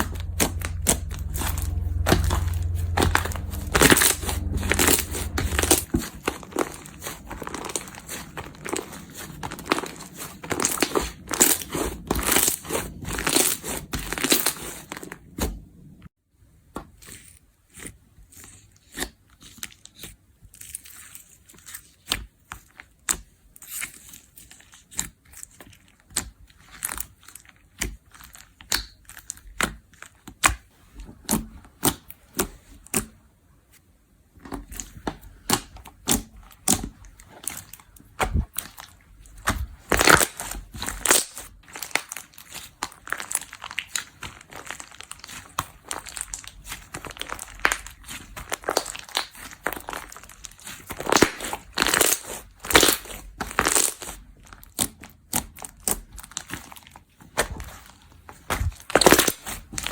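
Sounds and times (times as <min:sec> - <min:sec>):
slime squeezed and poked: 0:34.6 - 0:56.7.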